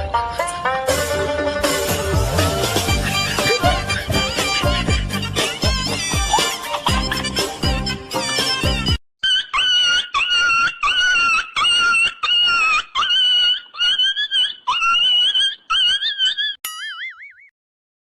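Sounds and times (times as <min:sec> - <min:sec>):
wobbling warbling tone: 0:03.4 - 0:04.3
high-pitched comedy squeals: 0:09.2 - 0:17.5.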